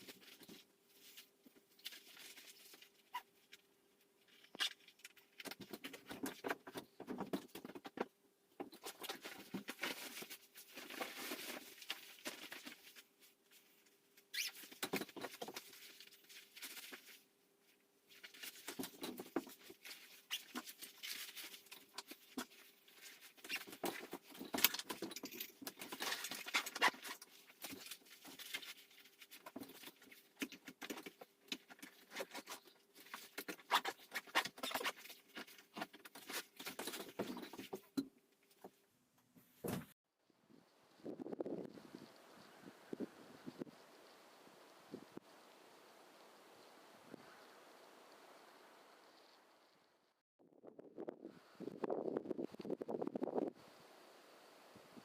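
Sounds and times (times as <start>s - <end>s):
rustling and scratching: 0.0s - 40.0s
faint steady hum: 40.3s - 50.2s.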